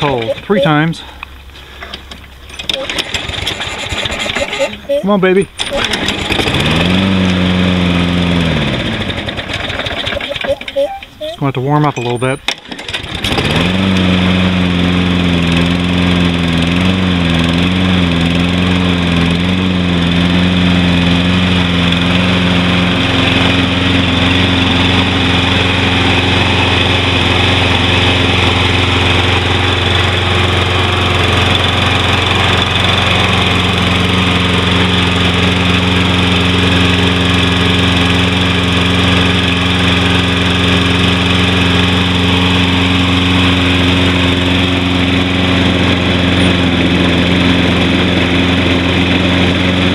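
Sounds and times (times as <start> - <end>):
lawn mower engine running: 0.0 - 49.9.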